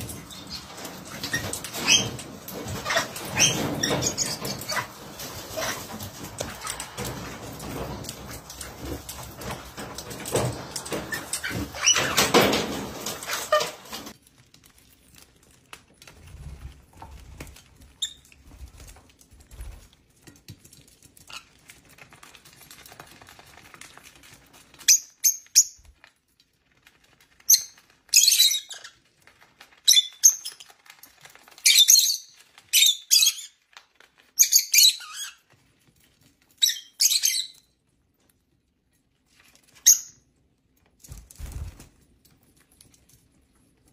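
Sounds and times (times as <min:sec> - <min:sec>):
rustling: 0:00.0 - 0:25.0.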